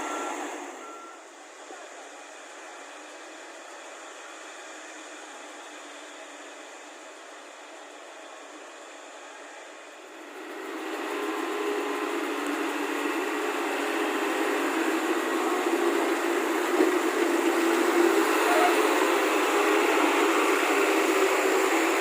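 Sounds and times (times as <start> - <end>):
heavy diesel engine running: 0.0 - 22.0.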